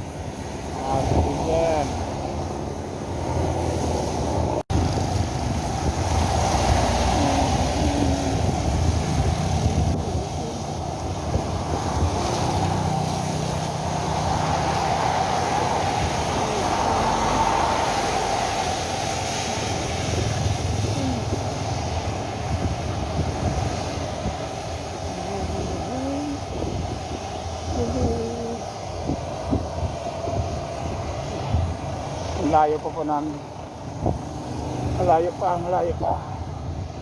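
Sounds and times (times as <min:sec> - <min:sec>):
wind rushing over microphone: 0:00.0 - 0:37.0.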